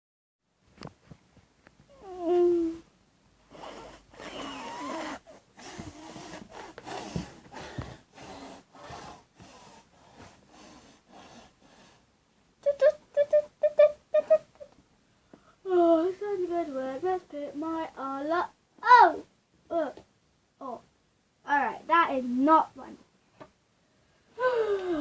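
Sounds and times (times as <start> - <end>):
person imitating snoring: 3.5 - 9.7.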